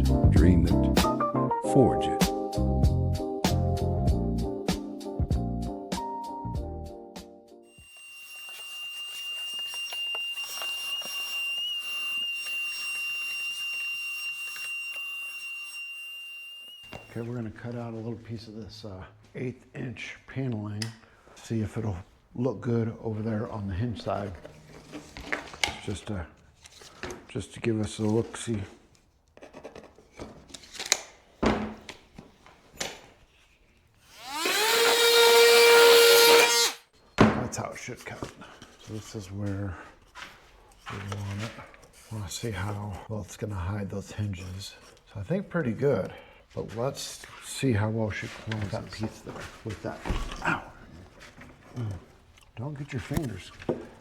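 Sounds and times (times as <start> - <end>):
electric saw cutting wood: 7.7 - 17.1, 34.1 - 36.8.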